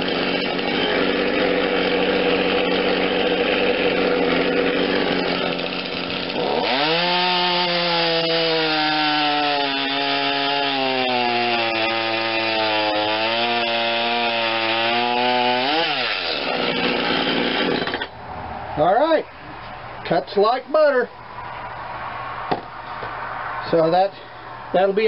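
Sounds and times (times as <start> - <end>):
chain cutting through log: 0.0 - 18.1
chainsaw revving: 0.0 - 18.2.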